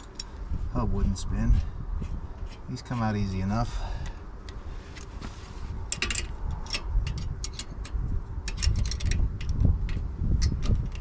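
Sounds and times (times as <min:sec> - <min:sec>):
metallic clicks and clinks: 0:05.9 - 0:11.0.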